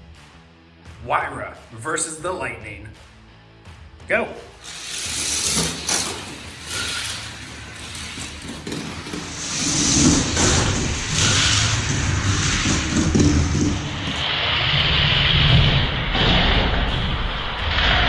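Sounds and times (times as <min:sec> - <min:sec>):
toy cars rattling down plastic track: 0:04.5 - 0:14.7.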